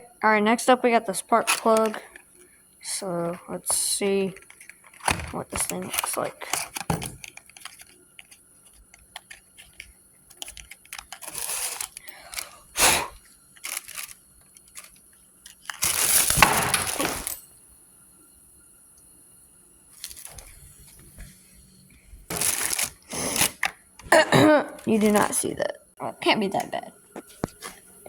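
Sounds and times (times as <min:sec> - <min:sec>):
hand tools clicking and scraping: 0:01.3 - 0:02.4, 0:03.1 - 0:17.4.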